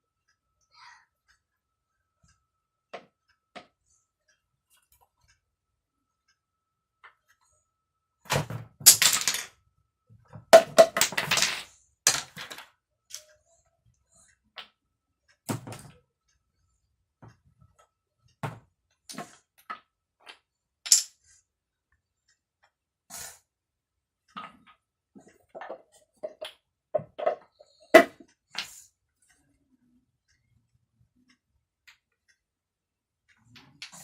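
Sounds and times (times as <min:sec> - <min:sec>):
wooden toy blocks knocking: 0:08.3 - 0:09.5, 0:10.4 - 0:13.2, 0:25.5 - 0:28.3.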